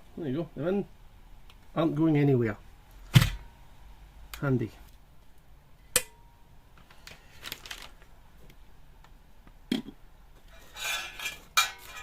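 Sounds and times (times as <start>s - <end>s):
rustling and scraping: 6.8s - 8.5s, 10.4s - 12.0s.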